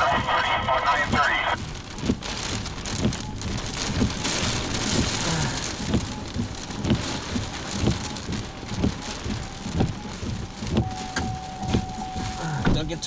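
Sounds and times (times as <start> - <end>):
rain pattering on a vehicle: 0.0 - 13.0.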